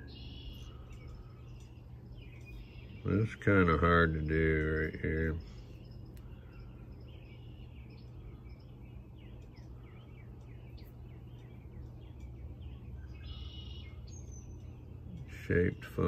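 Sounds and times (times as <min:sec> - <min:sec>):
low background hum: 0:00.0 - 0:16.0
small birds chirping: 0:00.0 - 0:16.0.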